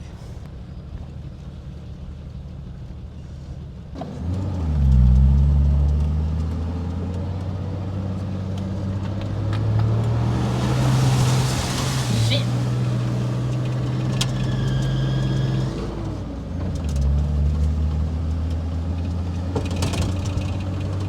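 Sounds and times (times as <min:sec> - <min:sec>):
engine revving: 0:04.0 - 0:16.2.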